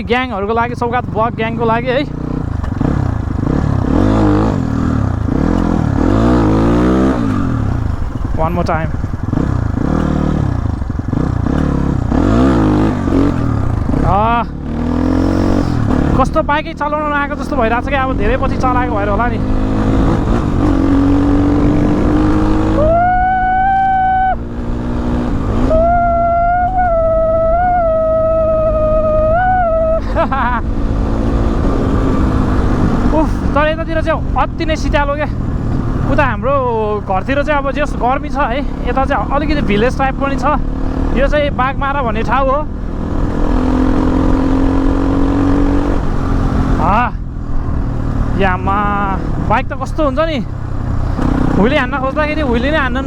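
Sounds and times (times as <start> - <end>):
dirt bike engine revving: 0.0 - 53.0
loud steady high tone: 25.5 - 30.3.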